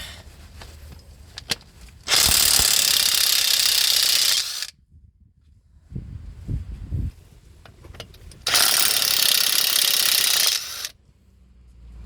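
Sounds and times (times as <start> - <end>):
impact wrench hammering: 2.1 - 4.7, 8.5 - 10.9.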